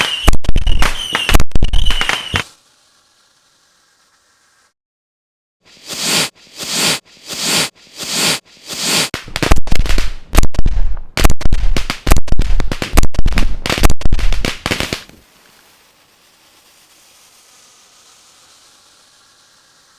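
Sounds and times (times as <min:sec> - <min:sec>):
fireworks bangs and crackles: 0:00.0 - 0:04.7, 0:06.0 - 0:17.6
faint hiss: 0:01.0 - 0:04.8, 0:14.6 - 0:19.9.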